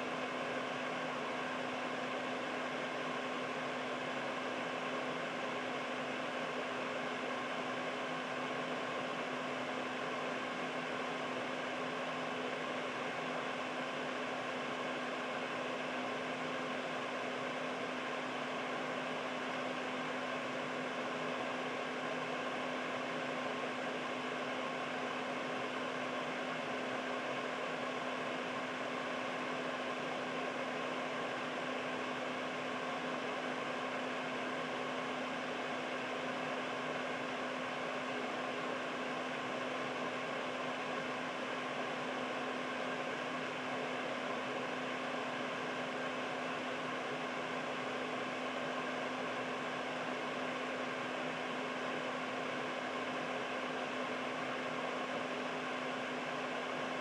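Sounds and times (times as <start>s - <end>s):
air purifier fan running: 0.0s - 57.0s.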